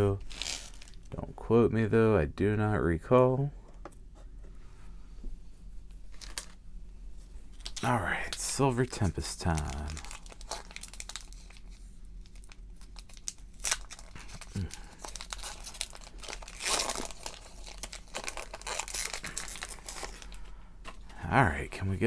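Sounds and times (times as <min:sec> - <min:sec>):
foil wrapper crinkling and tearing: 0:00.2 - 0:01.1, 0:06.1 - 0:06.6, 0:07.5 - 0:20.4.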